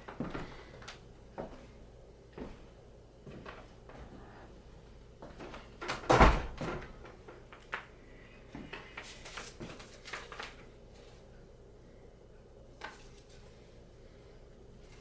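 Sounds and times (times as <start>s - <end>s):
rustling handling noises: 6.8s - 11.5s, 12.7s - 15.0s.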